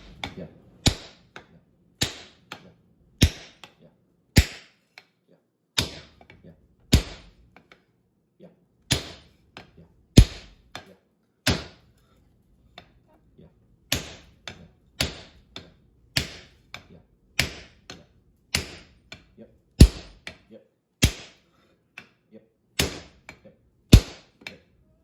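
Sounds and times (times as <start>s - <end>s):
hammer striking hot steel on anvil: 0.0s - 1.4s, 2.0s - 2.6s, 3.2s - 3.8s, 4.4s - 5.0s, 5.8s - 7.4s, 8.9s - 10.9s, 11.5s - 12.0s, 13.9s - 20.4s, 21.0s - 21.4s, 22.8s - 24.6s.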